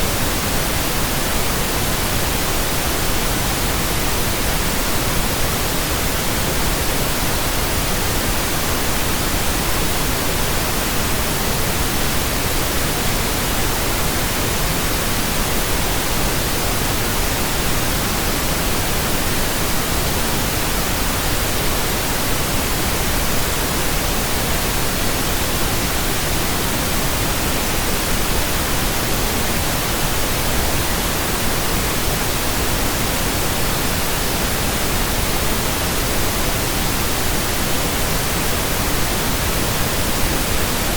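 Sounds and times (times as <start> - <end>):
steady pink noise hiss: 0.0 - 40.9.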